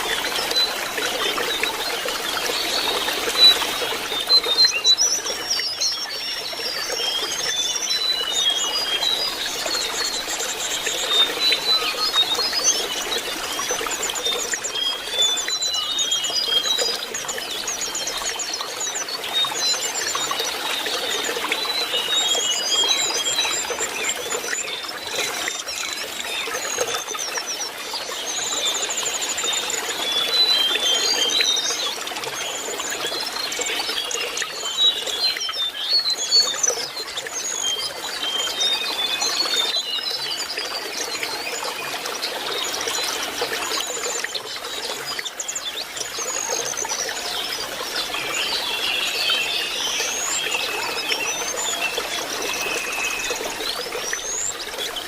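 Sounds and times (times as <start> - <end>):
bird song whistling and twittering: 0.0 - 41.8, 42.5 - 55.0
water trickling: 0.0 - 55.0.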